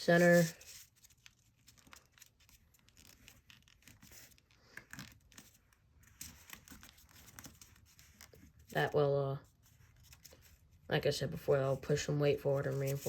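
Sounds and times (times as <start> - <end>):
paper rustling and folding: 0.0 - 13.0.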